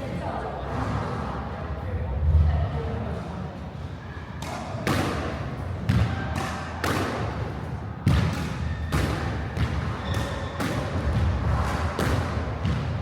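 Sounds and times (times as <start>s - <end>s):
squash ball hitting racquets and walls: 4.4s - 13.0s.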